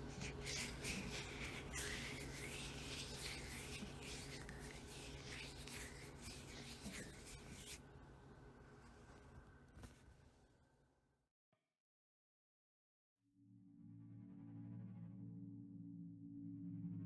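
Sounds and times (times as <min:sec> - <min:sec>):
scratching and rubbing: 0:00.0 - 0:07.8
steady low hum: 0:00.0 - 0:09.8.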